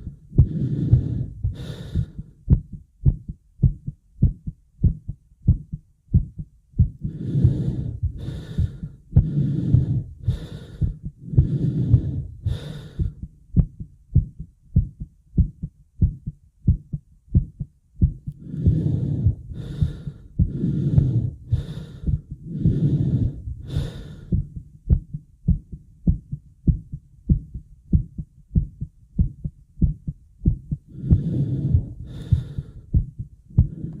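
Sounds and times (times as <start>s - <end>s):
heavy quick breaths: 0.0s - 2.5s, 6.8s - 13.3s, 18.4s - 25.0s, 30.9s - 34.0s
fast heartbeat: 0.0s - 34.0s.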